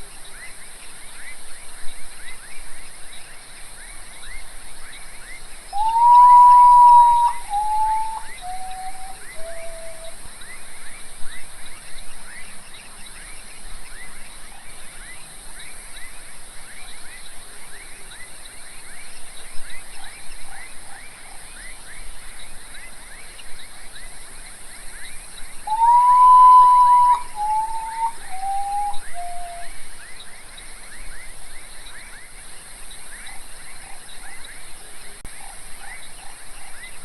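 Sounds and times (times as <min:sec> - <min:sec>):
rapid insect chirping: 0:00.0 - 0:37.0
bird mournful whistling song: 0:05.7 - 0:10.6, 0:25.6 - 0:30.3.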